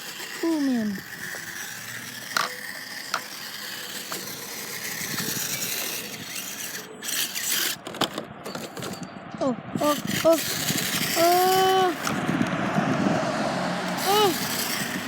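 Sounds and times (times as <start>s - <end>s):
toy truck drivetrain rattling: 0.0s - 15.0s
rush of noise: 9.1s - 15.0s.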